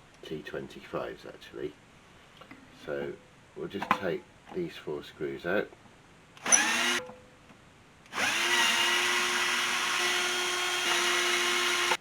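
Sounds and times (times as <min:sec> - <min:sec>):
power screwdriver motor: 0:06.4 - 0:07.0, 0:08.1 - 0:12.0.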